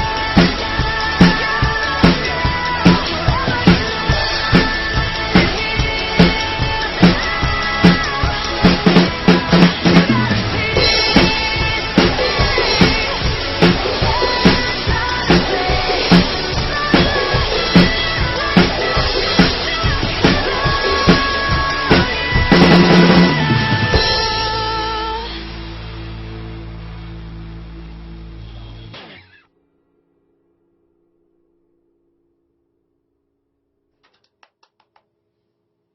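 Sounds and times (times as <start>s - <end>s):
drum kit hits: 0.0s - 25.2s
recorded rock music: 0.0s - 29.5s.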